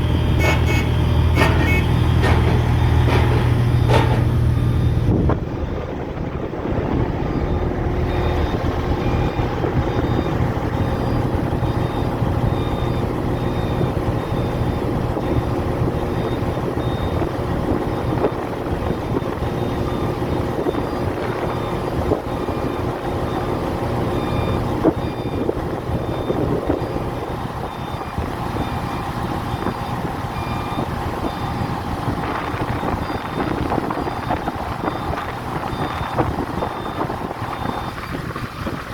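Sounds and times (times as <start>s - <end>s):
heavy machine engine rumbling: 0.0s - 38.9s
warning beeper short beeps: 0.3s - 5.8s.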